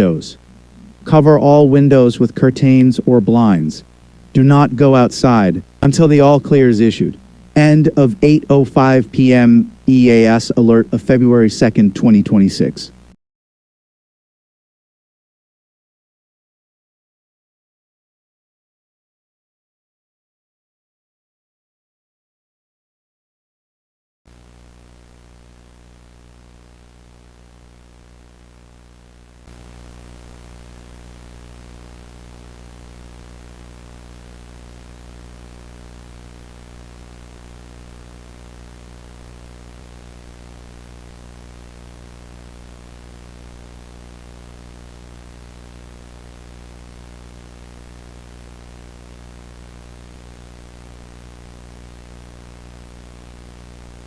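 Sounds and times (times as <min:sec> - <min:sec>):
electrical hum with static hiss: 0:00.0 - 0:13.2, 0:24.3 - 0:54.0.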